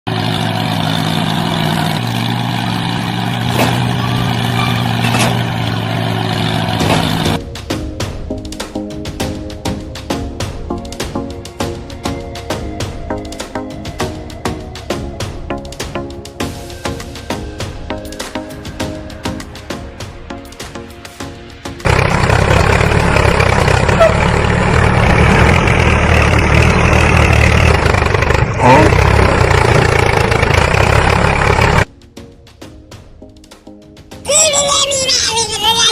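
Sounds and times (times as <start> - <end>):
engine running steadily: 0.1 - 7.4, 21.8 - 31.9.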